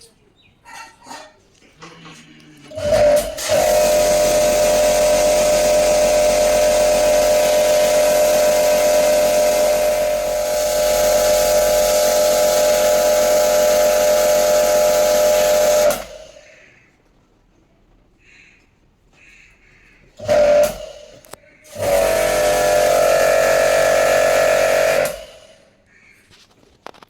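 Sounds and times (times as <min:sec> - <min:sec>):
pressure washer whining: 0:01.8 - 0:16.6, 0:20.2 - 0:25.8
water jet hissing: 0:02.7 - 0:16.7, 0:20.2 - 0:25.8.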